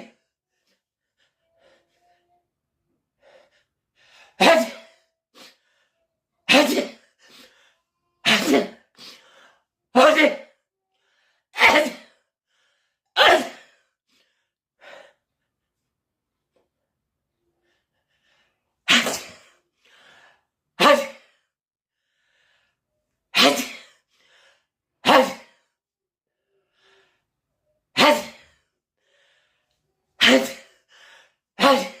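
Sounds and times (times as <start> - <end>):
person sneezing: 4.4 - 5.0, 6.5 - 7.4, 8.2 - 8.8, 11.6 - 12.1, 13.2 - 13.7, 18.9 - 19.6, 20.8 - 21.3, 23.3 - 24.0, 25.0 - 25.5, 28.0 - 28.5, 30.2 - 30.8, 31.6 - 32.0.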